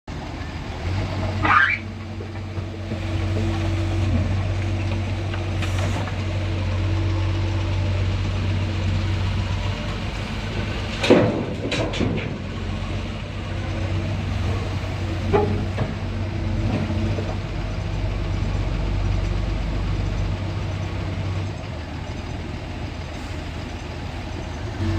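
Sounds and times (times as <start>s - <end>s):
excavator diesel engine running: 0.1s - 24.9s
metal clanks: 10.8s - 12.7s, 14.4s - 17.4s.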